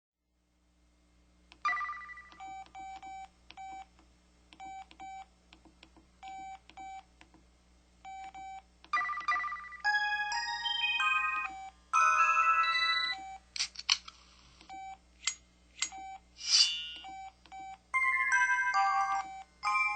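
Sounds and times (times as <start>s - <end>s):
phone chime: 9.0s - 13.4s, 18.0s - 19.9s
electronic jingle: 9.9s - 13.2s.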